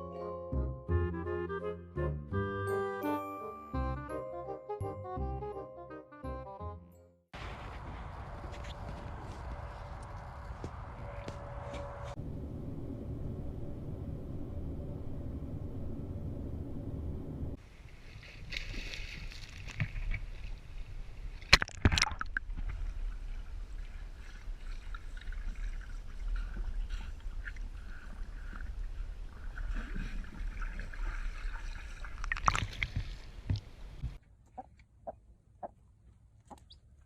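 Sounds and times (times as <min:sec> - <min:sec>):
low steady rumble: 0:08.1 - 0:17.6
water sloshing and splashing: 0:17.6 - 0:34.2.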